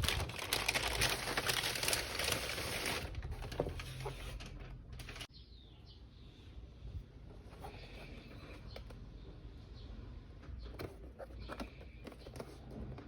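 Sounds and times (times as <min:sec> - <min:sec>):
packaging crinkling and rustling: 0:00.0 - 0:05.3.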